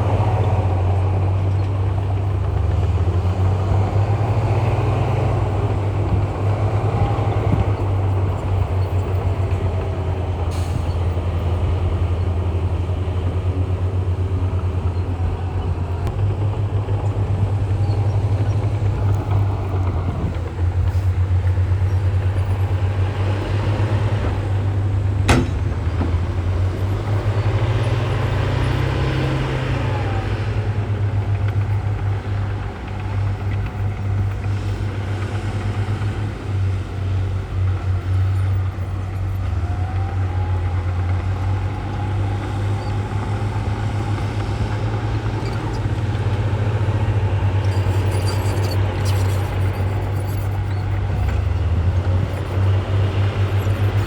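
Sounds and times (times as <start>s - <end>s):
heavy machinery engine drone: 0.0s - 54.0s
sharp knock: 25.3s - 26.2s.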